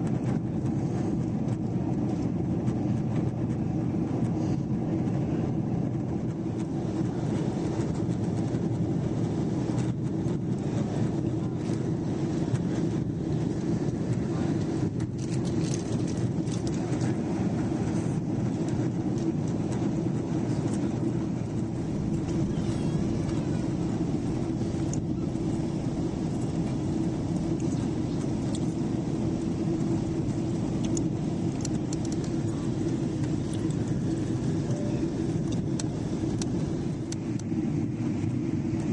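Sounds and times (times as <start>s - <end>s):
jet engine rumble in cabin: 0.0s - 38.9s
even hum: 11.4s - 38.9s.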